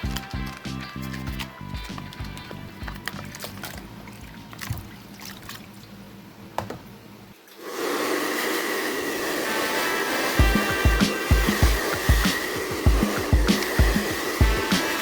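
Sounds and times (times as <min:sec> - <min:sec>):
small fan motor whirring: 0:07.6 - 0:15.0.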